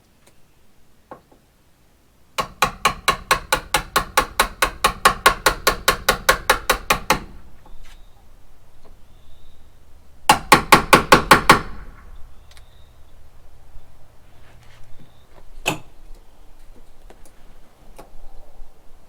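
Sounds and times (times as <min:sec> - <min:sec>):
hammer strikes: 0:02.4 - 0:07.7, 0:10.3 - 0:12.2.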